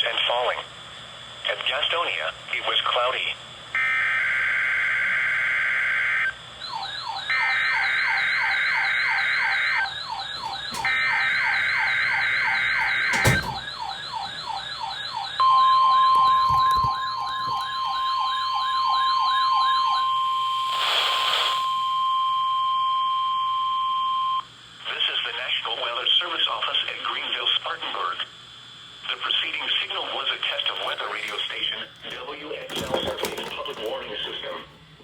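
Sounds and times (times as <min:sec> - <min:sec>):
steady warning alarm tone: 0:03.8 - 0:20.8, 0:30.5 - 0:34.9
warbling alarm siren: 0:03.8 - 0:21.7.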